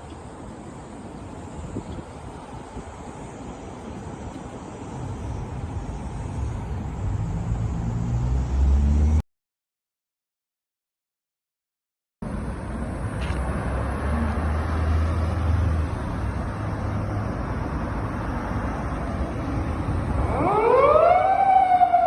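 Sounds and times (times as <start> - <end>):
low engine hum: 0.0 - 9.2
traffic noise: 0.0 - 9.2, 12.2 - 22.0
police siren wailing: 20.2 - 22.0.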